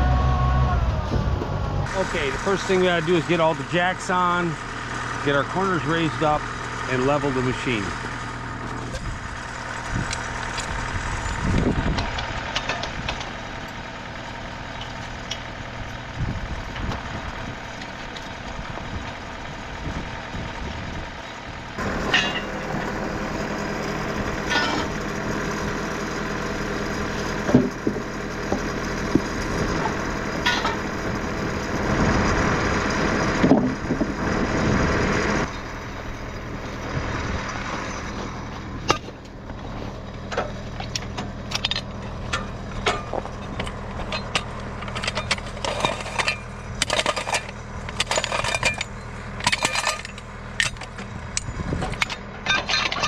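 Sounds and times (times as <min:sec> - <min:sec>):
sawmill engine running: 0:00.0 - 0:53.0
sharp metallic knocks: 0:22.0 - 0:22.8, 0:24.4 - 0:25.0, 0:27.5 - 0:30.9.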